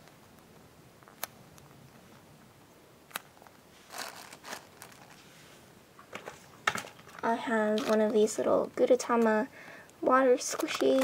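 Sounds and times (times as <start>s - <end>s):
toys rustling: 3.1s - 11.0s.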